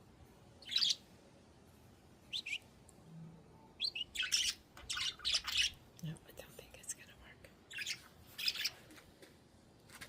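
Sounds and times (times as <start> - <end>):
budgerigars chirping: 0.6 - 1.0, 2.3 - 2.6, 3.8 - 5.8, 7.7 - 8.8.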